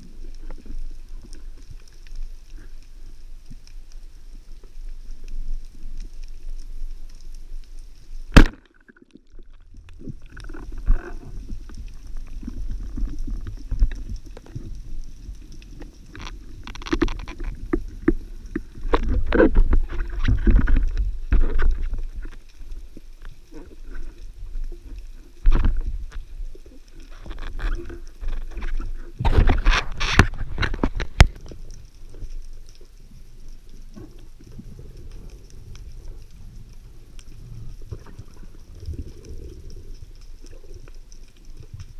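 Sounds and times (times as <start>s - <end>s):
underwater bubbling rumble: 0.0s - 41.9s
sharp crack: 8.3s - 9.1s
underwater clicks and knocks: 8.3s - 22.6s, 23.2s - 26.3s, 27.0s - 32.8s.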